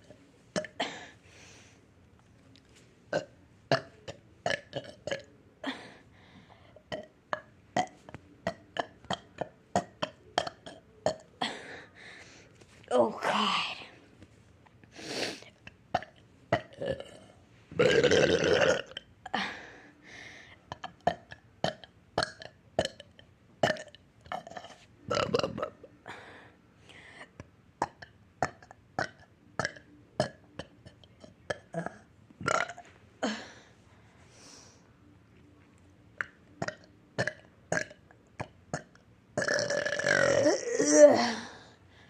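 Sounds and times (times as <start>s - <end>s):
person burping: 0.6s - 1.1s, 3.1s - 5.8s, 6.9s - 11.6s, 16.0s - 19.4s, 20.7s - 25.9s, 27.8s - 33.5s, 36.2s - 41.5s.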